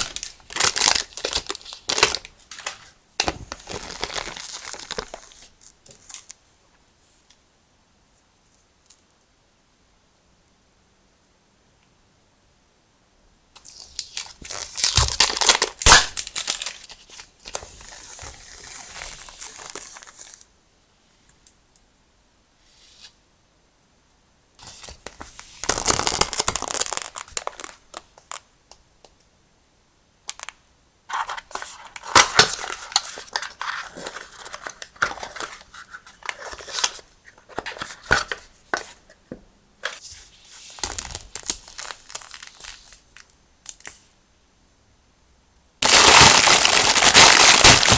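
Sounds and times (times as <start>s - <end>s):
packaging tearing: 0.0s - 5.4s, 13.6s - 20.4s, 25.6s - 27.8s, 31.1s - 38.4s, 45.8s - 47.9s
packaging rustling and crackling: 0.0s - 6.4s, 13.7s - 20.4s, 24.8s - 28.4s, 31.1s - 39.1s, 39.8s - 43.9s, 45.8s - 47.9s.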